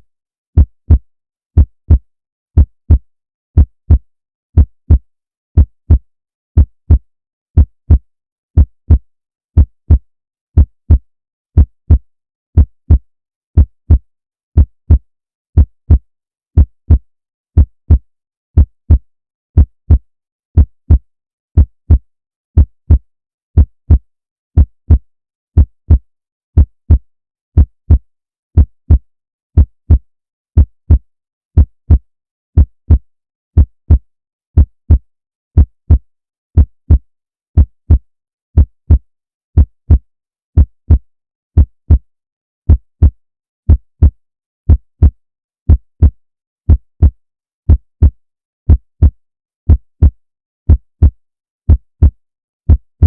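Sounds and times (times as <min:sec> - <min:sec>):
heartbeat: 0:00.6 - 0:01.0, 0:01.6 - 0:02.0, 0:02.6 - 0:03.0, 0:03.6 - 0:04.0, 0:04.6 - 0:05.0, 0:06.6 - 0:07.0, 0:07.6 - 0:08.0, 0:08.6 - 0:09.0, 0:09.6 - 0:10.0, 0:10.6 - 0:11.0, 0:11.6 - 0:12.0, 0:12.6 - 0:13.0, 0:13.6 - 0:14.0, 0:14.6 - 0:15.0, 0:15.6 - 0:16.0, 0:16.6 - 0:17.0, 0:17.6 - 0:18.0, 0:19.6 - 0:20.0, 0:20.6 - 0:21.0, 0:21.6 - 0:22.0, 0:22.6 - 0:23.0, 0:23.6 - 0:24.0, 0:24.6 - 0:25.0, 0:25.6 - 0:26.0, 0:26.6 - 0:27.0, 0:27.6 - 0:28.0, 0:28.6 - 0:29.0, 0:29.6 - 0:30.0, 0:30.6 - 0:31.0, 0:31.6 - 0:32.0, 0:32.6 - 0:33.0, 0:34.6 - 0:35.0, 0:35.6 - 0:36.0, 0:36.6 - 0:37.0, 0:37.6 - 0:38.0, 0:38.6 - 0:39.0, 0:39.6 - 0:40.0, 0:40.6 - 0:41.0, 0:42.7 - 0:53.0.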